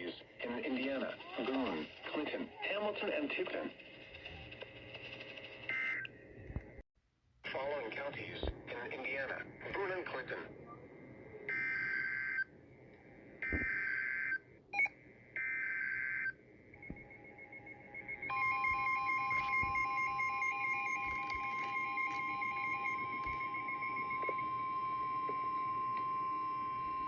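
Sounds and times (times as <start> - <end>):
steady alarm tone: 13.4 - 27.0
faint beeping pattern: 16.8 - 27.0.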